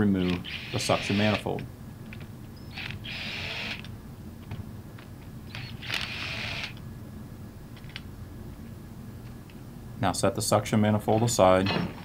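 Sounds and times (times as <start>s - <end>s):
low steady hum: 0.0s - 12.0s
impact wrench bursts: 0.4s - 1.4s.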